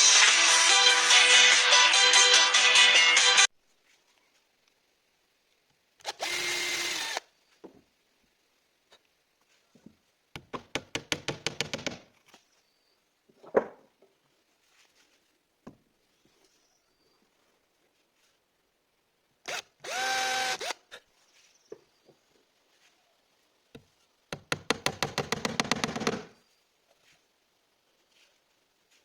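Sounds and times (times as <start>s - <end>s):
power drill running: 6.0s - 7.3s, 19.5s - 20.8s
knocks on wood: 10.4s - 12.1s, 24.3s - 26.3s.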